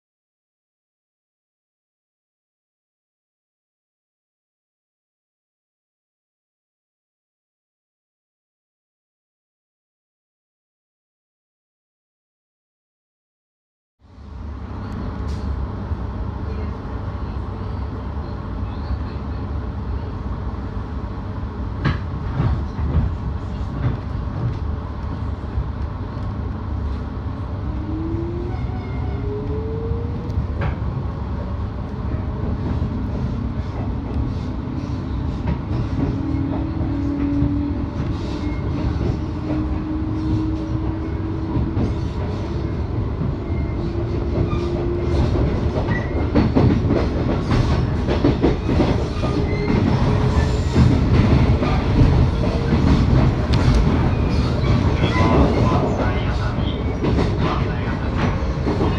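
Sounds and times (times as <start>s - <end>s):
train rumbling on rails: 14.0s - 58.9s.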